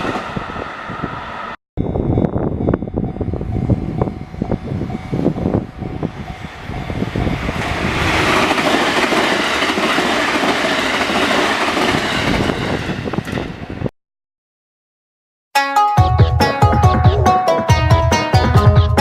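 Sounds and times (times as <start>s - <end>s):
train wheels clattering over rails: 6.8s - 13.5s.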